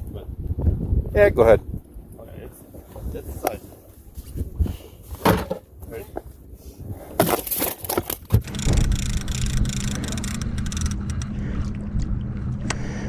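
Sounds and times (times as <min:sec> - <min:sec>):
boat motor humming: 0:08.4 - 0:13.0.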